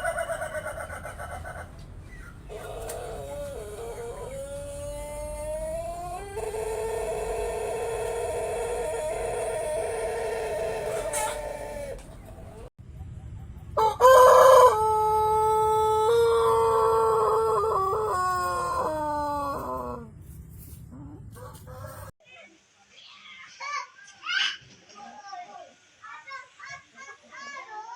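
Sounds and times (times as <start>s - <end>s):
rooster crowing: 2.5s - 12.1s, 13.8s - 20.1s, 21.3s - 22.1s.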